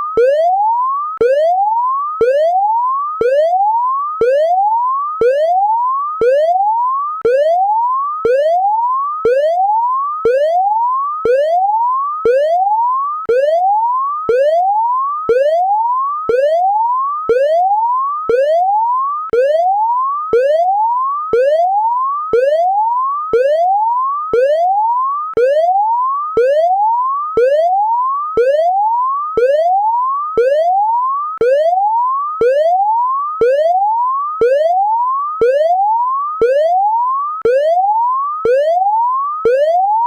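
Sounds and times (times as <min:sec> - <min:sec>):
electronic whooping alarm: 0:00.0 - 0:40.0.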